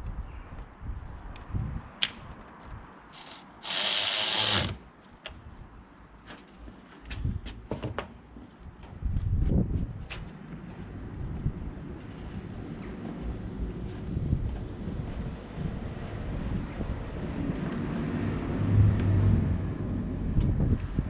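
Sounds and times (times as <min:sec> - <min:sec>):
heavy low rumble: 0:11.0 - 0:21.0.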